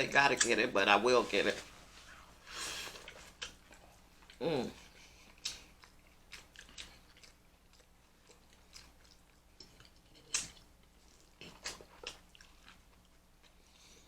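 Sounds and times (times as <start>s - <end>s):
person chewing food: 2.0s - 14.0s
wet mouth clicks and smacks: 9.6s - 10.7s.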